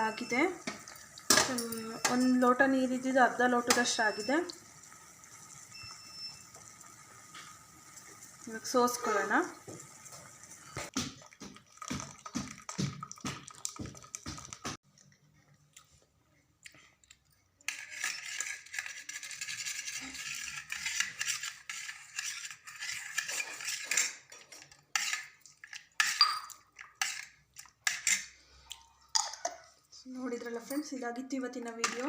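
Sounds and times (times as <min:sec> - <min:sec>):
metal kitchenware clinking: 0:00.0 - 0:04.4, 0:17.6 - 0:28.4, 0:29.1 - 0:32.0.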